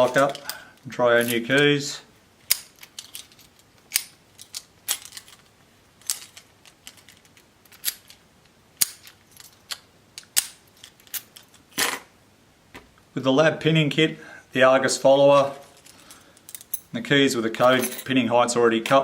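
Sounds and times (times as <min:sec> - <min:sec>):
padlock metallic clicks: 0:08.8 - 0:11.3.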